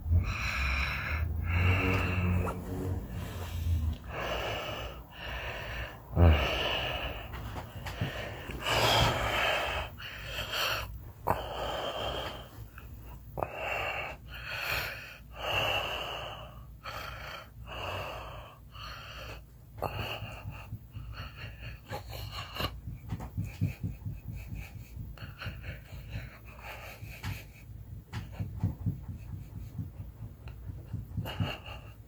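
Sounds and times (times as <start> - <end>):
man snoring: 0.0 - 5.0, 5.6 - 7.3.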